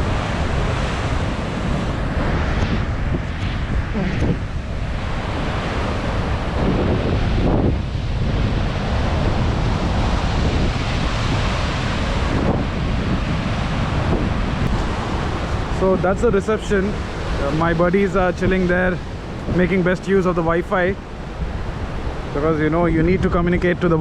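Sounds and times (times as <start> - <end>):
heavy rain: 0.0 - 17.8
sea surf: 0.0 - 24.0
wind buffeting microphone: 0.0 - 24.0.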